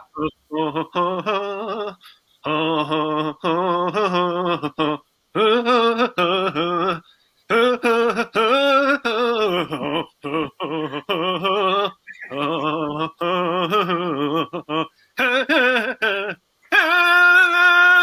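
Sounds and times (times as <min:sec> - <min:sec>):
man humming: 0:00.0 - 0:18.0.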